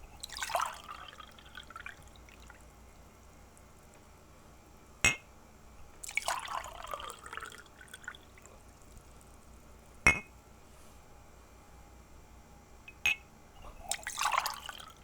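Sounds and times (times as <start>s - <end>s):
water pouring into a glass: 0.2s - 2.8s, 6.0s - 8.8s, 13.8s - 15.0s
ringing glass plink: 10.1s - 10.3s, 12.9s - 13.2s.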